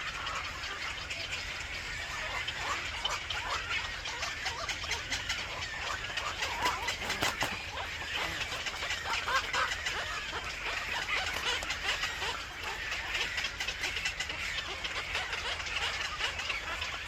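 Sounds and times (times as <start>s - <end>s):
birds chirping: 0.4s - 17.0s.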